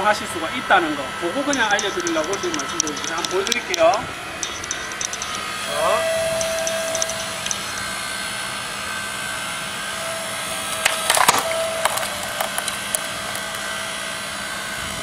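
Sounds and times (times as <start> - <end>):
log splitter motor hum: 0.0 - 15.0
wood cracking and splintering: 10.7 - 13.7.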